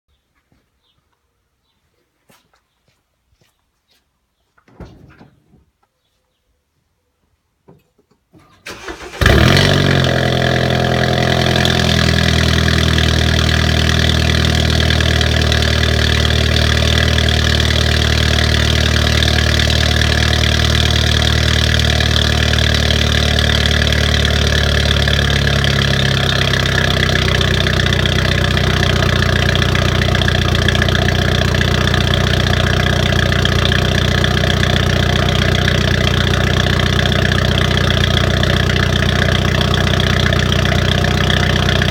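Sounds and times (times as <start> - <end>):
engine cranking: 8.4 - 41.9
car engine revving and idling: 8.7 - 41.9.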